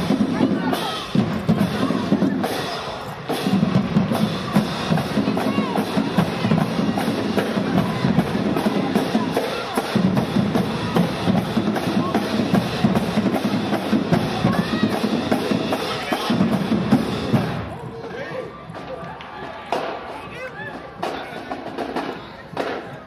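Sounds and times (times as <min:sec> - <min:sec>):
drumline bass drums and snares: 0:00.0 - 0:23.0.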